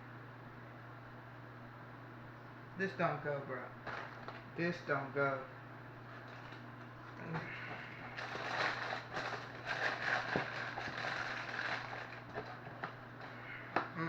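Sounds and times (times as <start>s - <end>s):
low electrical hum: 0.0s - 14.0s
person chewing crunchy cereal: 7.2s - 13.6s.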